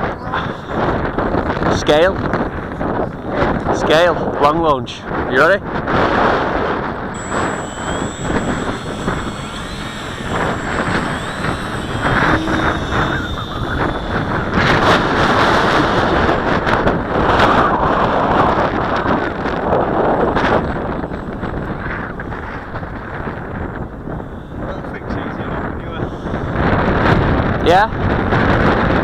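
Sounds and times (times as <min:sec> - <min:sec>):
wind buffeting microphone: 0:05.3 - 0:29.0
faint whine of model aircraft motor: 0:06.4 - 0:28.5.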